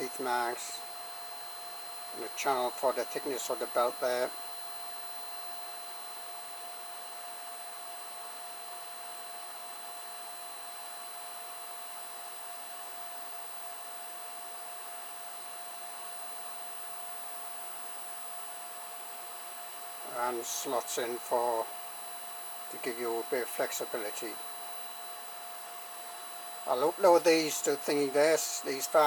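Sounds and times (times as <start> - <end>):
cooling fans whirring: 0.0 - 1.3, 2.1 - 4.4, 19.9 - 29.0
thin steady whine: 0.0 - 29.0.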